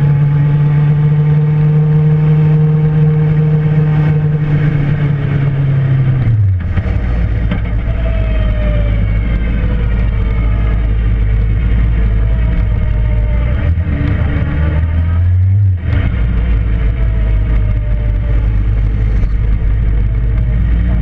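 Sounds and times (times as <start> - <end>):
motorcycle engine idling: 6.6 - 13.4, 16.2 - 21.0.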